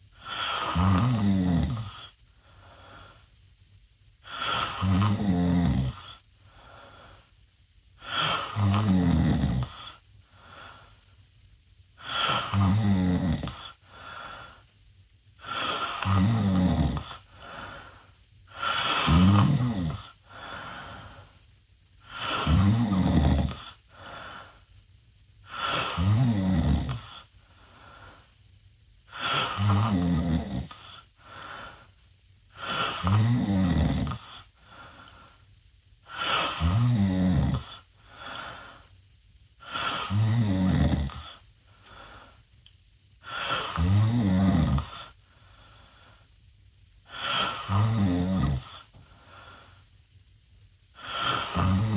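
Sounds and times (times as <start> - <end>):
quiet breathing: 0.0 - 51.9
person snoring loudly: 0.2 - 2.2, 4.2 - 6.2, 8.0 - 10.0, 12.0 - 13.8, 15.4 - 17.2, 18.5 - 21.0, 22.0 - 24.0, 25.5 - 27.3, 29.1 - 31.0, 32.6 - 34.5, 36.1 - 38.4, 39.6 - 41.4, 43.2 - 45.2, 47.1 - 48.9, 51.0 - 51.9.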